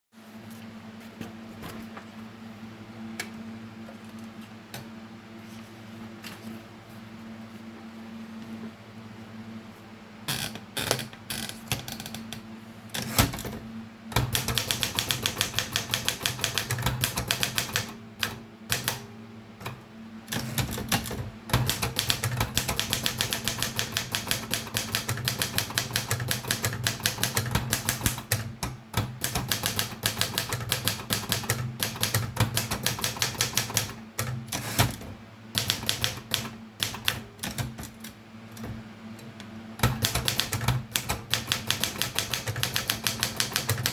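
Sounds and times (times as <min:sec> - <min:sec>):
manual typewriter typing: 0:14.2 - 0:19.0, 0:19.6 - 0:38.8, 0:39.8 - 0:43.9.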